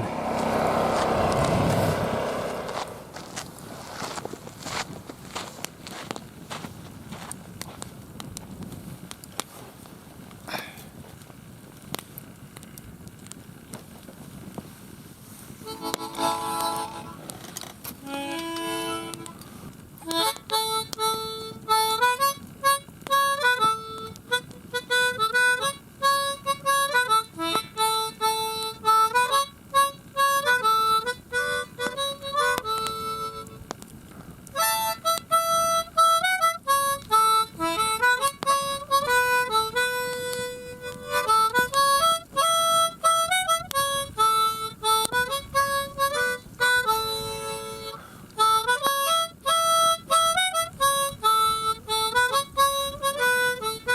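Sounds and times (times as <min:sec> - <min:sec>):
harmonica melody: 0:00.0 - 0:03.4, 0:15.6 - 0:33.8, 0:34.5 - 0:53.9.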